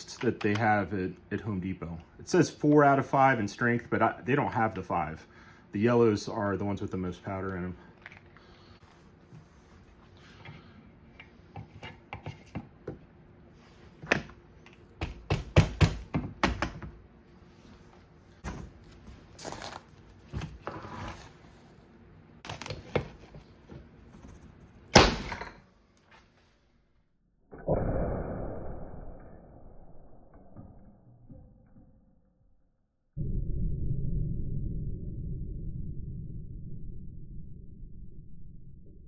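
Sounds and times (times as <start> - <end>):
nail gun firing bang: 24.9 - 25.6.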